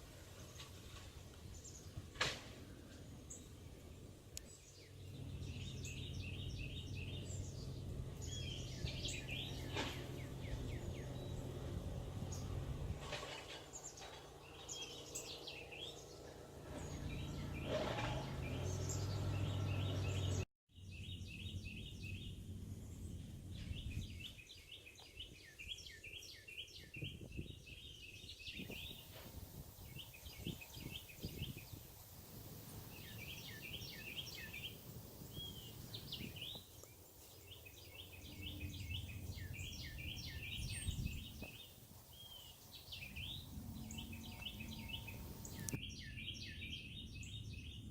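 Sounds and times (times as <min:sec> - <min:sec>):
songbirds chirping and singing: 0:02.7 - 0:47.9.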